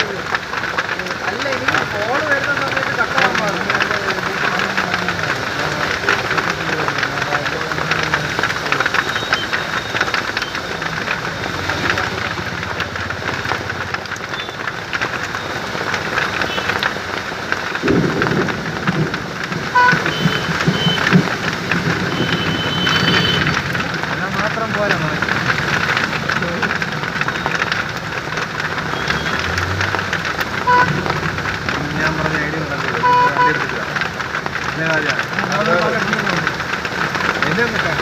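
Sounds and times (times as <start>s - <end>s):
heavy rain pouring: 0.0s - 38.0s.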